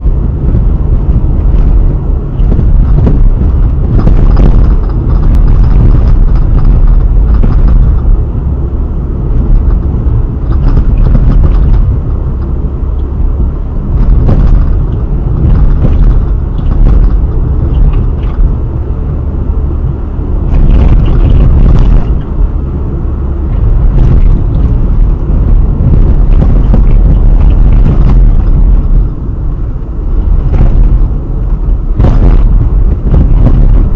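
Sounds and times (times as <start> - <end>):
car driving low rumble: 0.0 - 33.9
suspension knocks and clunks: 0.0 - 33.9.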